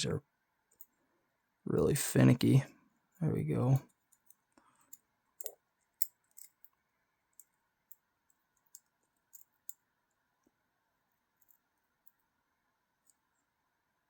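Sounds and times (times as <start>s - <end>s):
small metal knife parts clicking: 4.2s - 6.6s.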